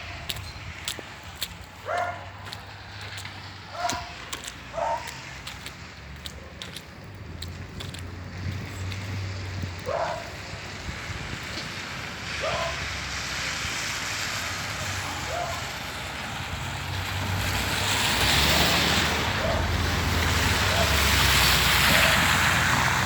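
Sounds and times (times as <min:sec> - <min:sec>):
storm wind blowing and gusting: 0:07.1 - 0:12.4.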